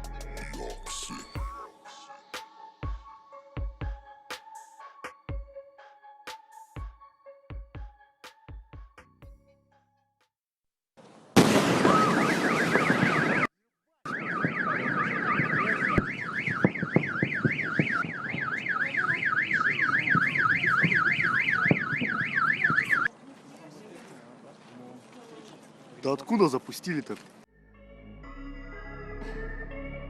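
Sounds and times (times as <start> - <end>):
warbling alarm tone: 14.1 - 23.1.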